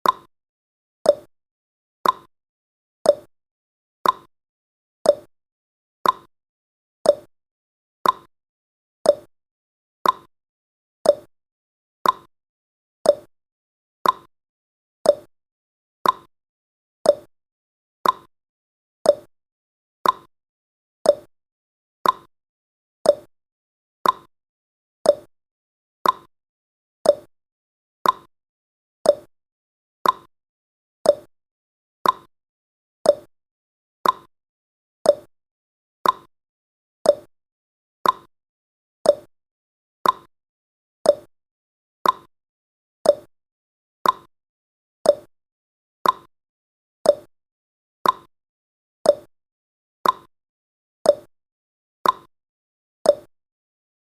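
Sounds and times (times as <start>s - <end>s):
timer ticking: 0.0s - 0.3s, 1.1s - 1.3s, 2.0s - 2.3s, 3.1s - 3.3s, 4.0s - 4.3s, 5.1s - 5.3s, 6.0s - 6.3s, 7.1s - 7.3s, 8.0s - 8.3s, 9.1s - 9.3s, 10.0s - 10.3s, 11.1s - 11.3s, 12.0s - 12.3s, 13.1s - 13.3s, 14.0s - 14.3s, 15.1s - 15.3s, 16.0s - 16.3s, 17.1s - 17.3s, 18.0s - 18.3s, 19.1s - 19.3s, 20.0s - 20.3s, 21.1s - 21.3s, 22.0s - 22.3s, 23.1s - 23.3s, 24.0s - 24.3s, 25.1s - 25.3s, 26.0s - 26.3s, 27.0s - 27.3s, 28.0s - 28.3s, 29.0s - 29.3s, 30.0s - 30.3s, 31.0s - 31.3s, 32.0s - 32.3s, 33.0s - 33.3s, 34.0s - 34.3s, 35.1s - 35.3s, 36.0s - 36.3s, 37.0s - 37.3s, 38.0s - 38.3s, 39.1s - 39.3s, 40.0s - 40.3s, 41.0s - 41.3s, 42.0s - 42.3s, 43.0s - 43.3s, 44.0s - 44.3s, 45.1s - 45.3s, 46.0s - 46.3s, 47.1s - 47.3s, 48.0s - 48.3s, 49.1s - 49.3s, 50.0s - 50.3s, 51.1s - 51.3s, 52.0s - 52.3s, 53.1s - 53.3s.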